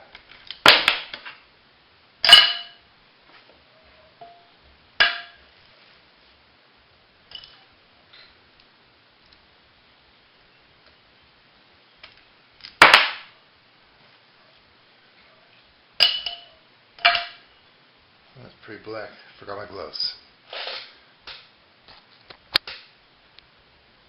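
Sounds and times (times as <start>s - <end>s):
sharp metal clanks: 2.2s - 2.8s, 4.2s - 5.4s, 16.0s - 17.5s.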